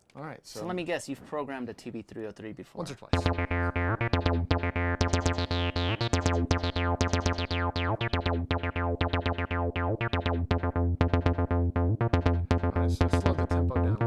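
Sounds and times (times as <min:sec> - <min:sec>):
synthesizer acid bassline: 0:03.1 - 0:14.0.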